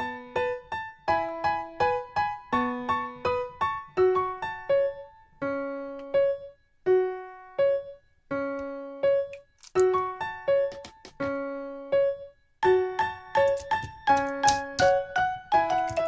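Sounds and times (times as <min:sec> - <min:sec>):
bouncy solo piano tune: 0:00.0 - 0:16.0.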